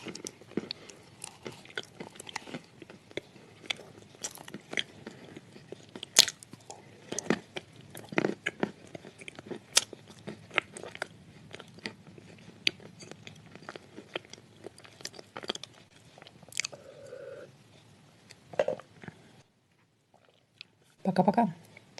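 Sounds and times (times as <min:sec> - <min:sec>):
chewing clay crunches: 0:00.0 - 0:16.8.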